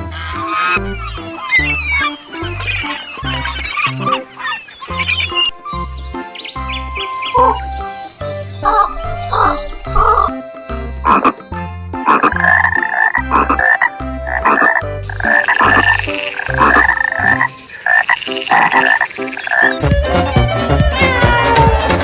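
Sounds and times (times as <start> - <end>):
animal croaking calls: 7.2 - 7.7, 8.6 - 10.4, 11.0 - 11.4, 12.0 - 19.8
rhythmic low bass line: 8.6 - 17.4.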